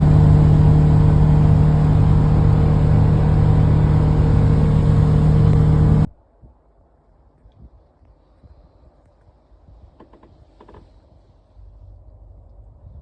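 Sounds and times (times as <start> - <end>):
loud mechanical hum: 0.0 - 6.1.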